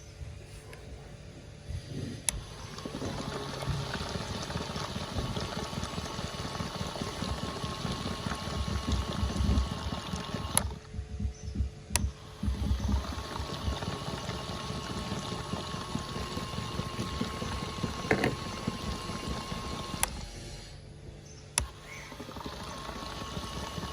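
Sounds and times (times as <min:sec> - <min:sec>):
toy motor whine: 0:02.2 - 0:10.8, 0:12.1 - 0:20.8, 0:21.6 - 0:23.9.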